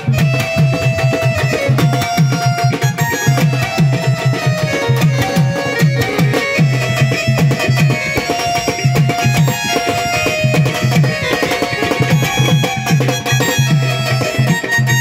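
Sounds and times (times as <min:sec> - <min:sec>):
hand drum beat: 0:00.0 - 0:15.0
held melody line: 0:00.0 - 0:15.0.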